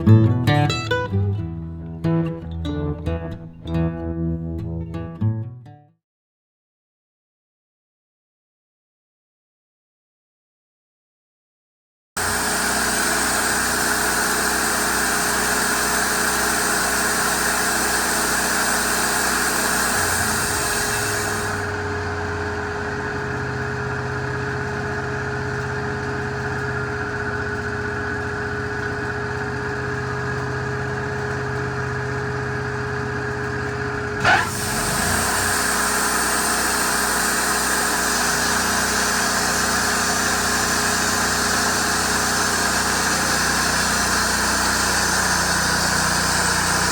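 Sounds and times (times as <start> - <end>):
band sawmill whining: 12.2 - 46.9.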